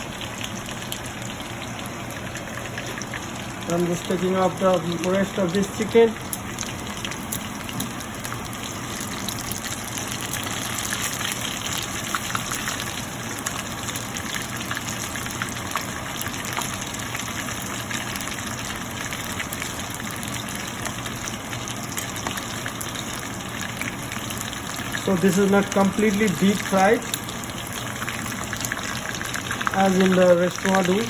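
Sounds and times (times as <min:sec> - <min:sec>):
food sizzling in hot oil: 0:00.0 - 0:31.0.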